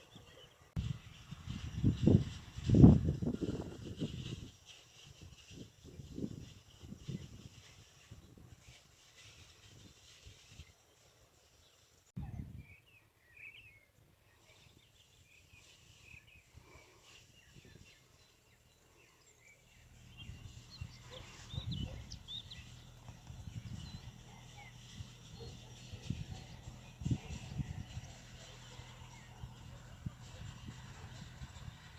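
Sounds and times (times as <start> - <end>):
small birds chirping: 11.7 - 31.9.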